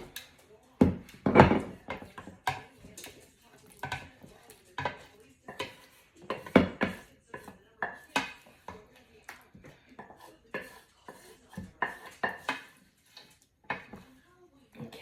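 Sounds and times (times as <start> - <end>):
metal spoon scraping cookware: 10.0 - 14.0.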